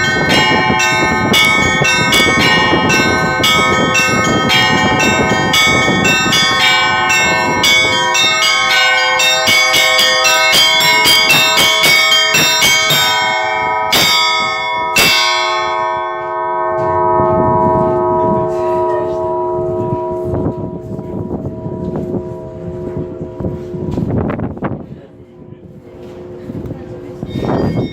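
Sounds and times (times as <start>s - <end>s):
church bells ringing: 0.0s - 24.8s, 25.6s - 27.9s
heavy bell strikes: 0.0s - 24.8s, 26.2s - 27.9s.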